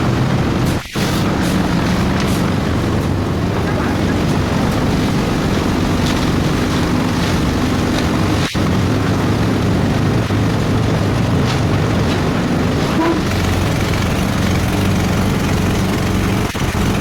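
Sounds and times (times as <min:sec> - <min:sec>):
machinery engine droning: 0:00.0 - 0:17.0.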